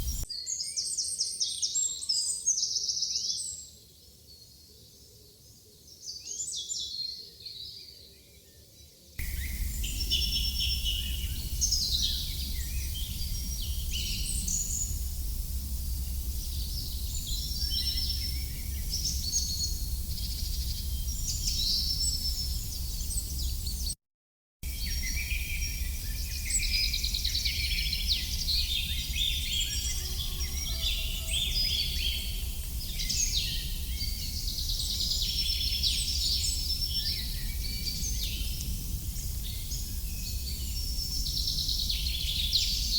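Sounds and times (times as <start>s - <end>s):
songbirds chirping and trilling: 0.0s - 24.0s, 24.6s - 42.9s
low outdoor rumble and hiss: 9.2s - 23.7s.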